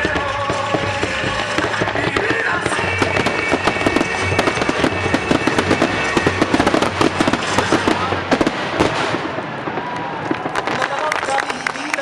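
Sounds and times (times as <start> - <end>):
music playing: 0.0 - 9.3
fireworks bangs and crackles: 0.0 - 12.0.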